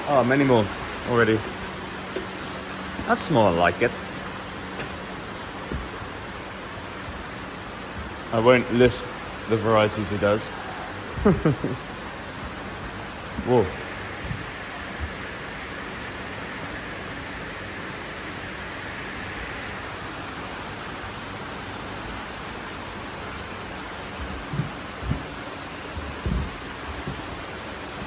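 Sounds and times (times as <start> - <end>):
water running and bubbling: 0.0 - 28.0
dull thumps: 4.7 - 6.4, 24.1 - 28.0.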